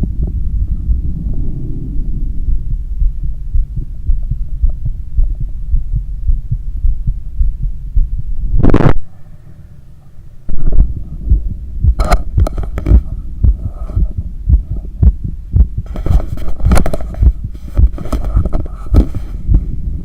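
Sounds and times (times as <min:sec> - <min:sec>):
heartbeat through stethoscope: 0:00.0 - 0:08.9, 0:10.5 - 0:20.0.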